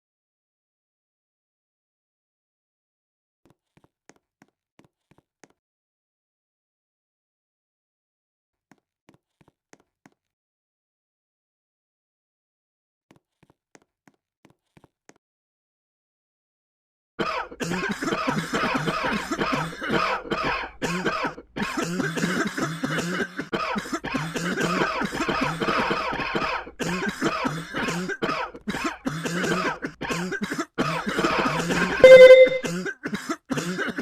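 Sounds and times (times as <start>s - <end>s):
person coughing: 17.2s - 34.0s.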